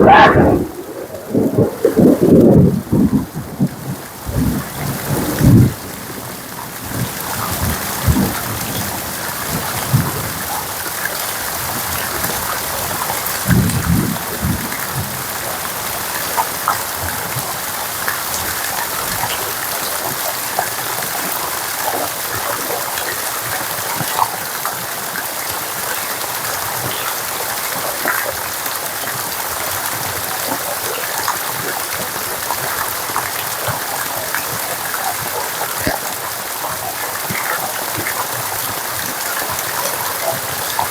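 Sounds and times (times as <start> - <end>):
low rumbles: 0.0 - 2.8
steady rain: 0.0 - 40.9
raindrops ticking: 18.1 - 40.9.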